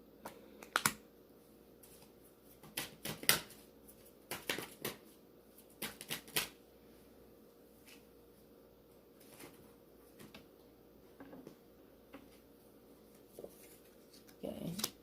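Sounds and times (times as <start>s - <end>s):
cards shuffling and flicking: 1.8s - 6.6s.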